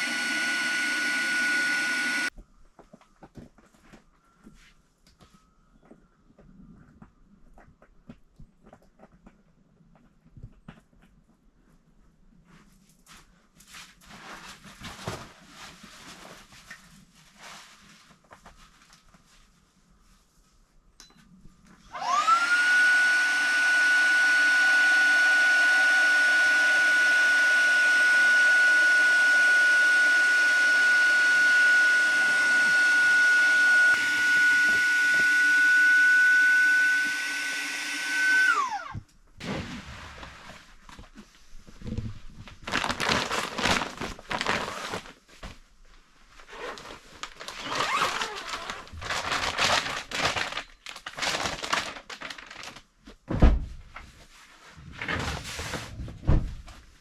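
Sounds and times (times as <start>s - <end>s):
small electric motor whining: 0.0s - 2.3s, 21.9s - 39.0s
rustling and crinkling: 2.3s - 21.9s, 39.2s - 57.0s.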